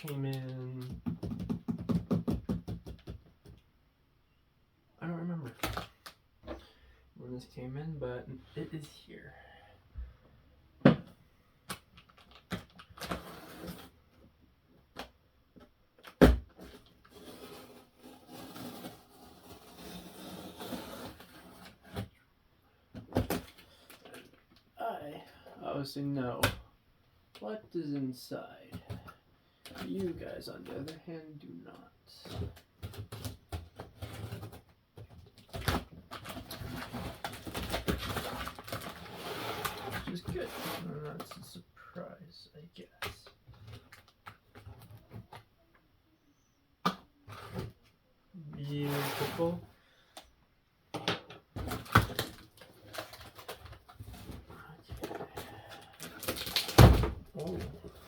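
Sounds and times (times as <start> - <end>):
knocks and clicks on cardboard box: 0.8 - 3.6
cardboard rustling scrape: 17.1 - 22.0, 36.3 - 40.9, 48.8 - 49.6.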